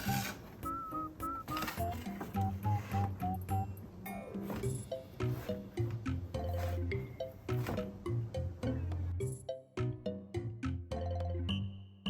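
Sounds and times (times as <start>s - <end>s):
light plucked tune with bass: 4.6s - 11.8s.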